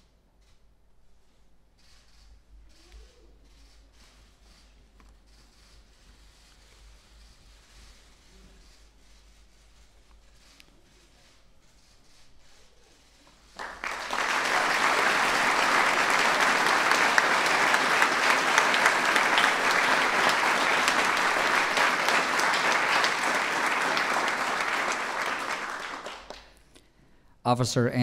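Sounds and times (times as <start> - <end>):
audience applauding: 13.6 - 26.7.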